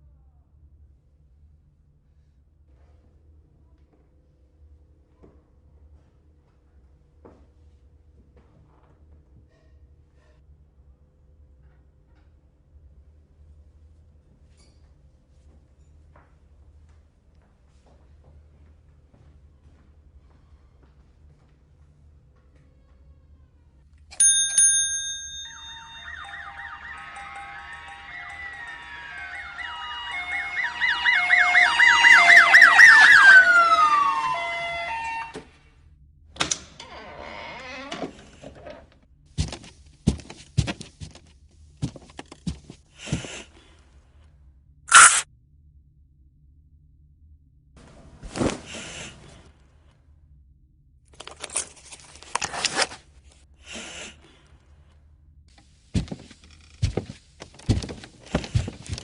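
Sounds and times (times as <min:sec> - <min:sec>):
stepped beeping tones: 0:25.5 - 0:35.4
siren wails: 0:25.5 - 0:35.6.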